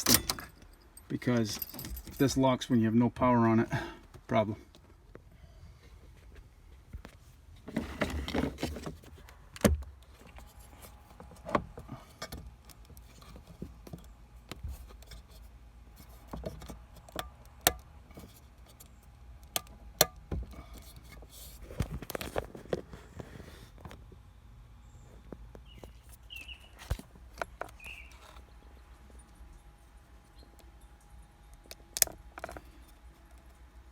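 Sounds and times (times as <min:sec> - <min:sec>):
metal tools clinking: 0:00.0 - 0:02.5
rustling and scraping: 0:04.8 - 0:09.4, 0:10.0 - 0:17.2, 0:18.0 - 0:19.0, 0:20.4 - 0:24.2, 0:25.0 - 0:29.7.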